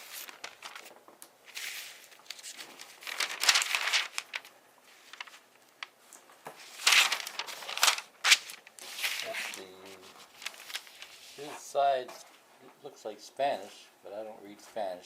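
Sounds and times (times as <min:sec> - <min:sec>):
paper rustling and crinkling: 0:00.0 - 0:12.3.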